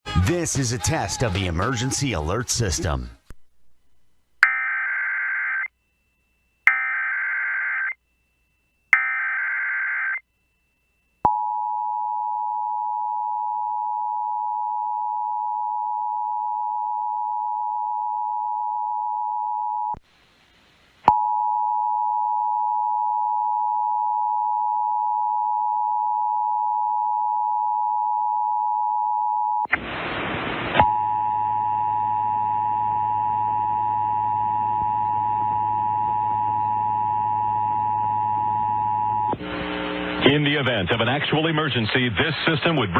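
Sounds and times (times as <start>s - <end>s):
loud burst of noise: 29.7s - 30.9s
low hum: 30.9s - 40.3s.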